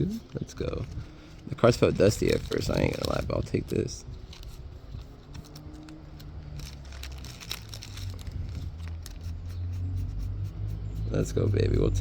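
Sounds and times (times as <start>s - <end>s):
low steady rumble: 0.0s - 12.0s
trading cards clicking and rustling: 1.7s - 9.6s.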